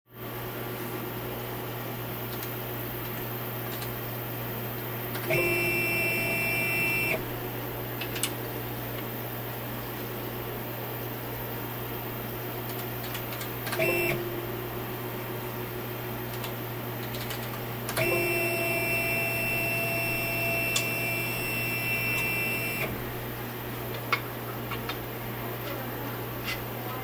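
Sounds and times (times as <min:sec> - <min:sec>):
stepper motor whining: 0:05.3 - 0:07.2, 0:18.0 - 0:23.0.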